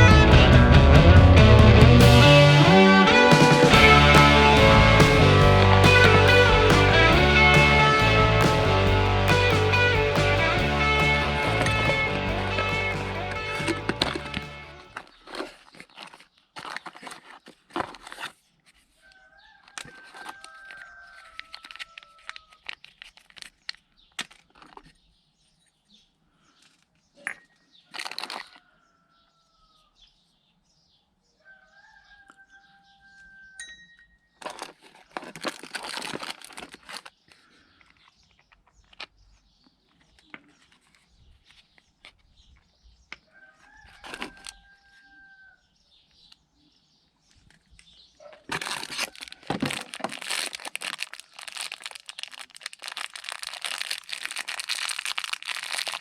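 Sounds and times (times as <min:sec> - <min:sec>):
loud noisy bursts: 0:00.0 - 0:14.8
rooster crowing: 0:19.1 - 0:22.4, 0:31.4 - 0:33.7, 0:43.3 - 0:45.6.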